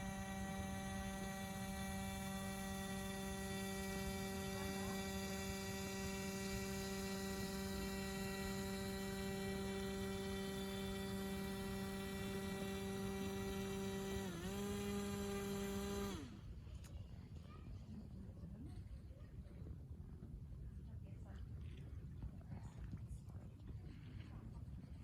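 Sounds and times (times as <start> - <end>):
model propeller motor whining: 0.0 - 16.8.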